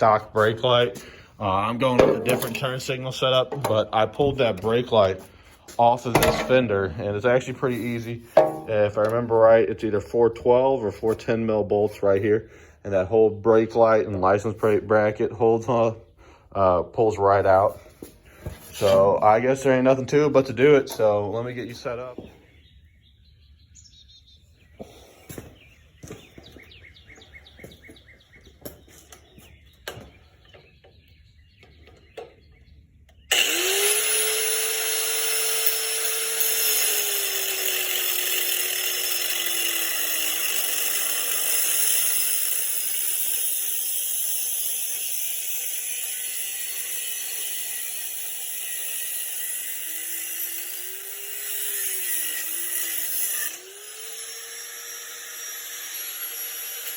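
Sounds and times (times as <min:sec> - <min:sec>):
power tool cutting steel: 0:01.8 - 0:04.9, 0:07.8 - 0:09.0, 0:33.3 - 0:56.9.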